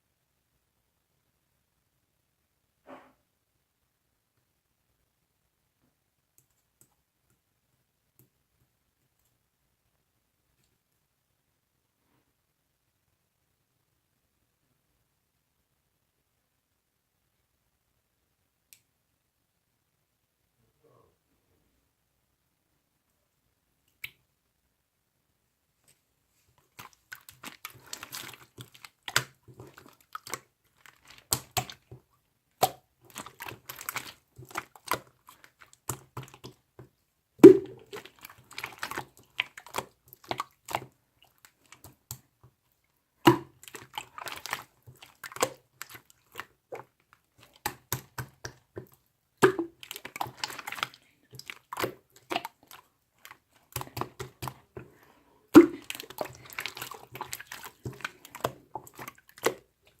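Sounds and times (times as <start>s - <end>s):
slime squishing: 26.4s - 60.0s
air bubble pop: 37.4s - 37.8s.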